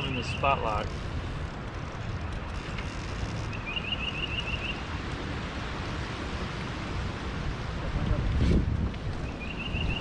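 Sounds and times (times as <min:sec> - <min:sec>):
wind rumbling on microphone: 0:00.0 - 0:10.0
bird trilling: 0:03.5 - 0:04.8.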